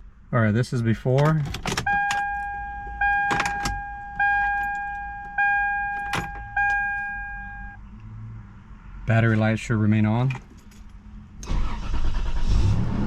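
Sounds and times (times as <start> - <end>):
keys rattling in ignition: 1.0 - 7.8, 10.2 - 12.4
dashboard warning chime: 1.8 - 7.8.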